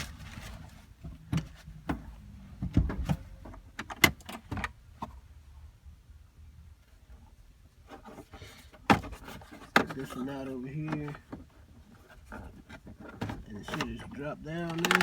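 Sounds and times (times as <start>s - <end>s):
plastic clicks and knocks: 12.9s - 15.0s.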